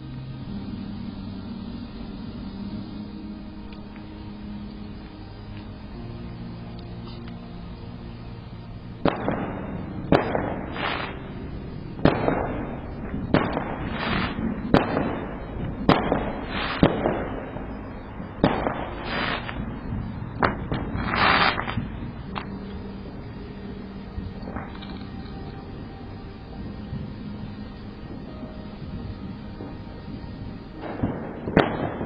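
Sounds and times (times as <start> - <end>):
fireworks crackling: 0.0 - 32.0
fireworks bangs: 9.0 - 22.6, 26.6 - 32.0.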